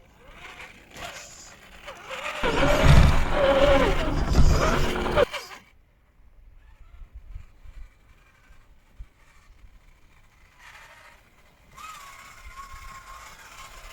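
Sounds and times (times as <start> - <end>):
electric motor whining: 0.0 - 5.6
toy truck rumbling over ground: 0.0 - 5.7, 6.7 - 13.9.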